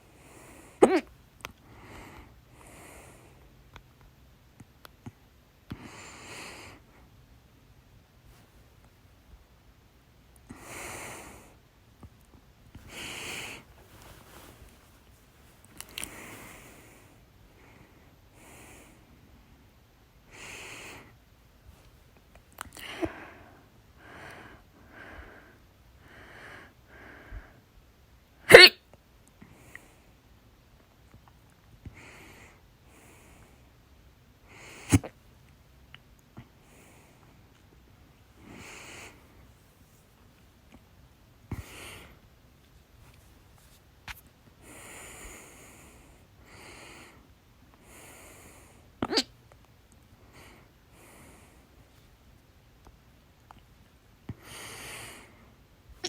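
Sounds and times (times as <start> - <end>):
quiet breaths: 0.0 - 28.4, 29.2 - 56.0
woman hiccupping: 0.8 - 1.1, 28.5 - 28.8, 49.0 - 49.3
breathing in and out: 1.6 - 3.4, 12.8 - 19.2, 22.7 - 27.7, 38.4 - 39.5, 41.5 - 42.3, 44.6 - 49.2, 50.2 - 52.0, 54.3 - 55.6.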